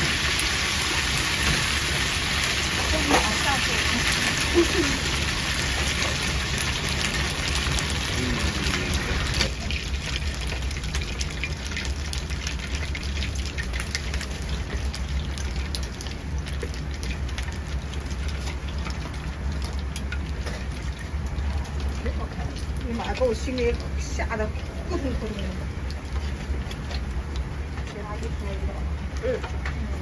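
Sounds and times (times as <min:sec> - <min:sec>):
dumplings sizzling in a pan: 0:00.0 - 0:30.0.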